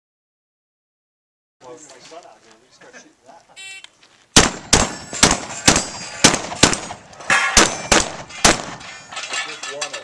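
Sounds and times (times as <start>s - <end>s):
shotgun shots: 4.4s - 8.8s
metallic ringing: 4.8s - 10.0s.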